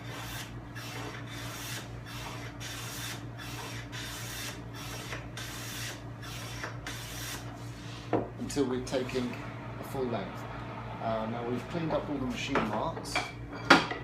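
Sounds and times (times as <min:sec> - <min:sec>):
hand plane cutting wood: 0:00.0 - 0:07.5.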